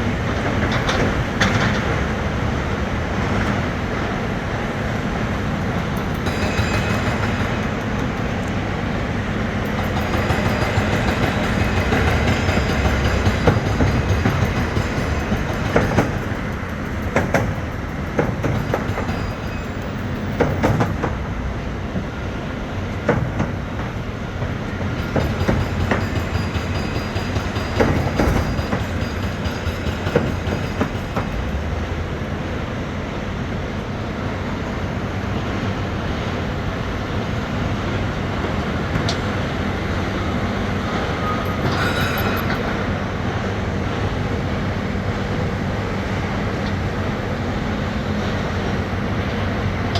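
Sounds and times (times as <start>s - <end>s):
metallic clanks and knocks: 0.0s - 4.1s
heavy diesel engine drone: 0.0s - 6.2s.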